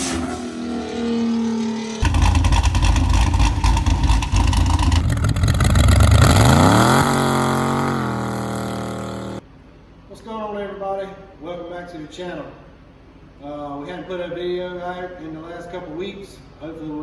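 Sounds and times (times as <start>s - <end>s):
vehicle engine revving: 0.0s - 9.4s.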